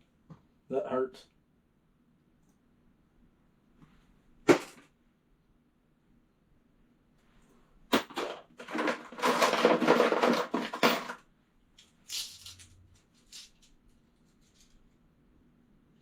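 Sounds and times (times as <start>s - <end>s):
metal sockets clattering in toolbox: 8.0s - 11.2s.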